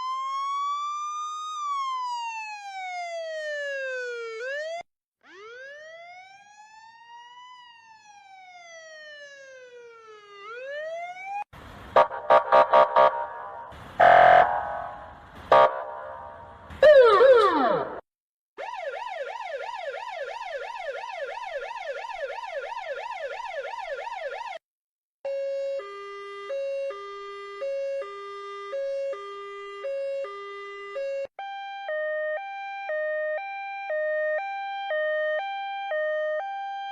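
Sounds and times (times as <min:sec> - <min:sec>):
higher-pitched hi-lo siren: 0:00.0 - 0:18.0
two-tone hi-lo siren: 0:00.0 - 0:18.0, 0:18.6 - 0:24.6, 0:25.2 - 0:36.9
yelp siren: 0:00.0 - 0:18.0, 0:18.6 - 0:24.6, 0:25.3 - 0:36.9.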